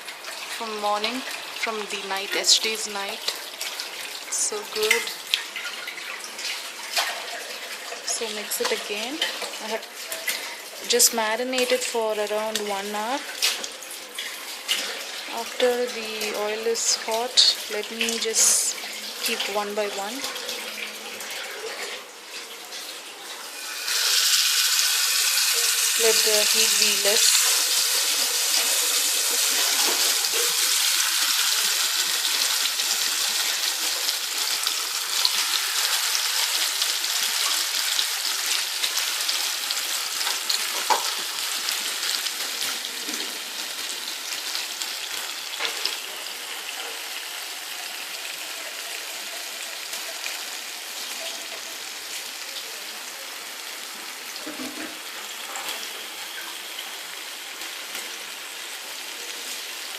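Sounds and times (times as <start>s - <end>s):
fish sizzling in frying pan: 0.0s - 59.9s.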